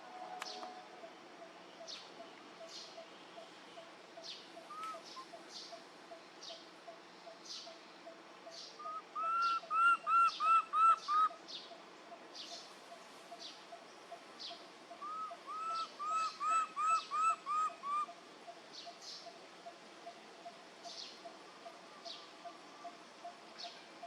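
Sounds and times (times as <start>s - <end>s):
bird calling clear notes: 0.2s - 5.8s, 8.4s - 11.8s, 14.5s - 19.4s.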